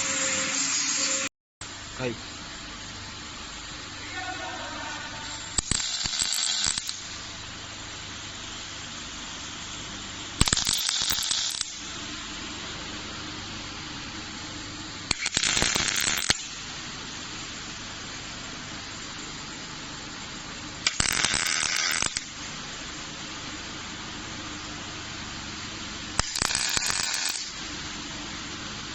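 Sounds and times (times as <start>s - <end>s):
steady machine hum: 0.0s - 5.7s, 11.7s - 21.1s
welding hiss: 0.0s - 24.7s, 25.3s - 28.6s.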